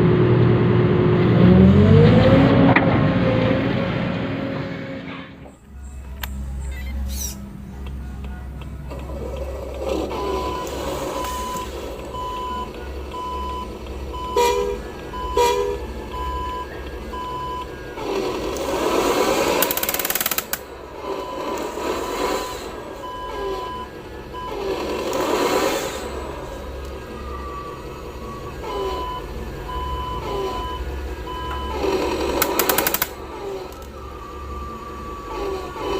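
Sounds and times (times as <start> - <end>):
reversing beeps: 10.0 - 18.0, 21.0 - 26.2, 26.9 - 35.9.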